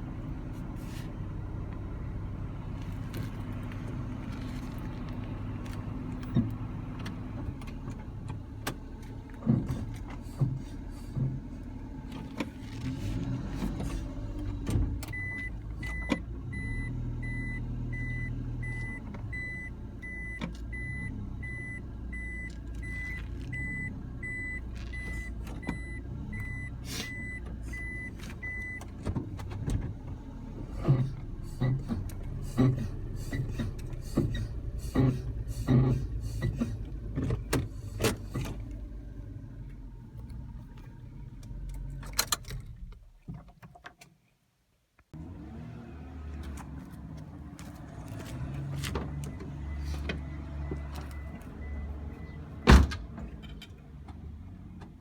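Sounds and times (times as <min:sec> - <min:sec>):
knocks and clunks: 0:47.6 - 0:55.0.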